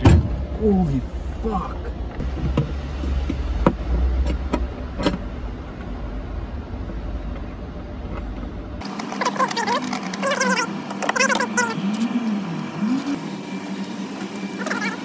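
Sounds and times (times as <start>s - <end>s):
steady low rumble: 0.0s - 8.8s.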